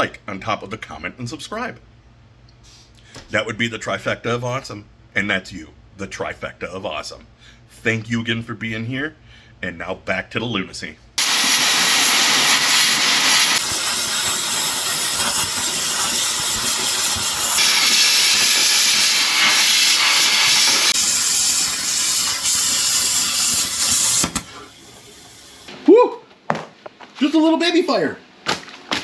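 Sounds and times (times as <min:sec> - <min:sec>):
metal-cutting tool hissing: 0:11.2 - 0:25.7.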